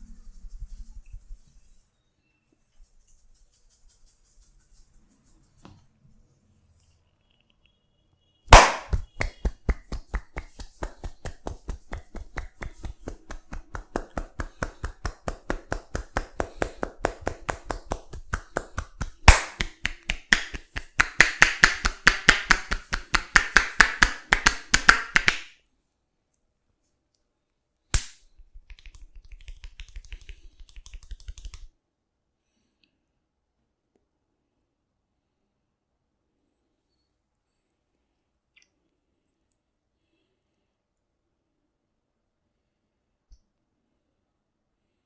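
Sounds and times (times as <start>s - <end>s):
sharp snap: 8.5s - 25.5s, 27.9s - 30.3s
rhythmic hand slaps: 8.5s - 25.6s, 28.0s - 31.7s.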